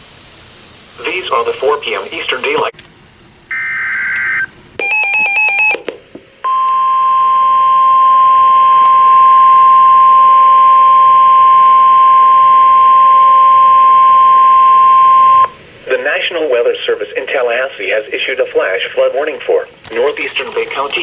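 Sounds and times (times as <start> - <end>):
steady warning alarm tone: 3.5 - 5.8, 6.4 - 15.6.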